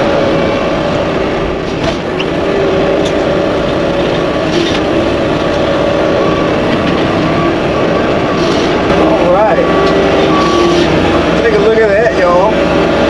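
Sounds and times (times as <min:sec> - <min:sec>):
skid steer cutter drone: 0:00.0 - 0:13.0.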